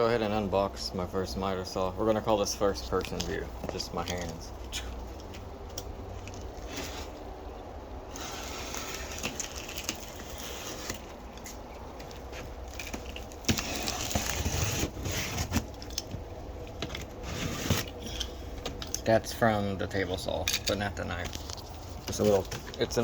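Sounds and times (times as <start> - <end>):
packaging rustling and crackling: 5.1 - 19.0, 20.8 - 23.0.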